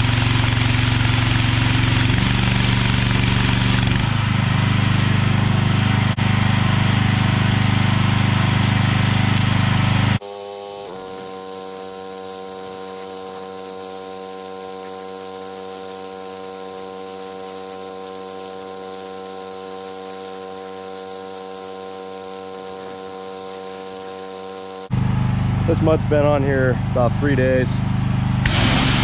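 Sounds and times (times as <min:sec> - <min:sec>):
muffled engine hum: 0:00.0 - 0:10.2.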